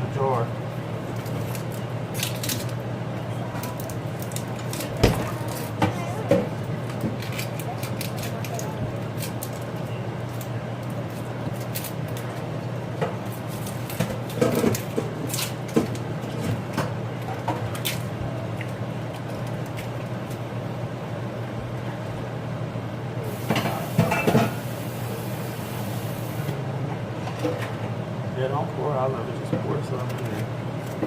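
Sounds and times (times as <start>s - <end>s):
dishes and utensils clattering: 23.5s - 24.6s.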